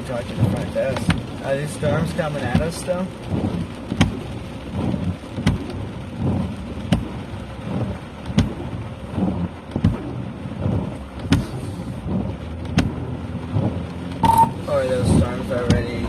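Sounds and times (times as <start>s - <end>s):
low rumbling: 0.0s - 16.0s
rain on a vehicle: 0.0s - 16.0s.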